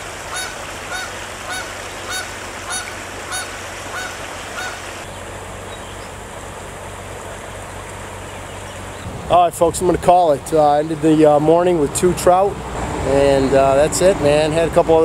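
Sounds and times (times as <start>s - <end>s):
bird calling: 0.0s - 6.2s
creek water rushing: 0.0s - 15.0s.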